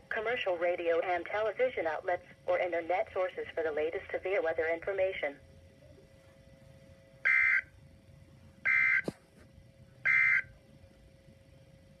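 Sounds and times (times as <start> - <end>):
faint steady hum: 0.0 - 12.0
buzzing two-tone data bursts: 7.3 - 7.6, 8.7 - 9.1, 10.1 - 10.4.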